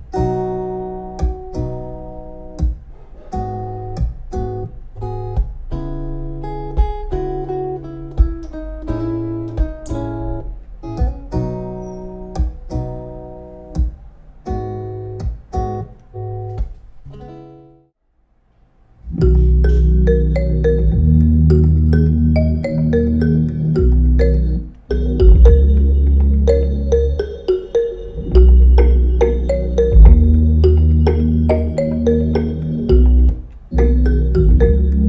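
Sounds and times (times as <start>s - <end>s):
programmed drum beat: 8.2s - 8.5s, 23.3s - 35.0s
strummed acoustic guitar chords: 19.2s - 35.0s.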